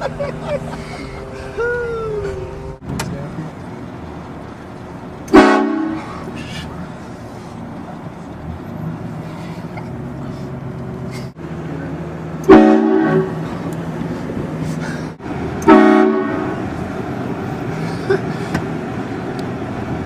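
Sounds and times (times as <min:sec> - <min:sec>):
steady vehicle hum: 0:00.0 - 0:20.0
train horn blasts: 0:05.3 - 0:06.1, 0:12.5 - 0:13.4, 0:15.6 - 0:16.6.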